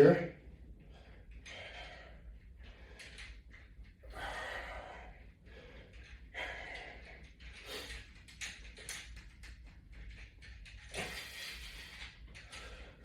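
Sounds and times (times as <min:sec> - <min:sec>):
man breathing heavily: 0:00.5 - 0:08.4, 0:10.8 - 0:13.0.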